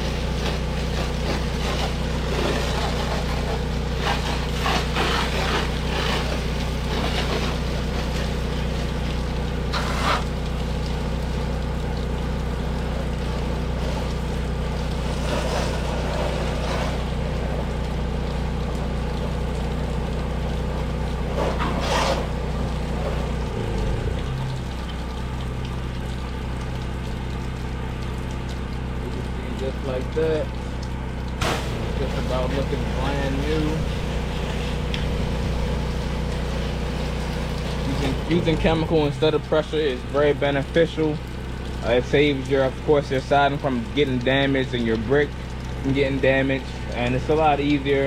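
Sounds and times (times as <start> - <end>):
hose spraying water on siding: 0.0 - 48.0
pump motor running: 0.0 - 48.0.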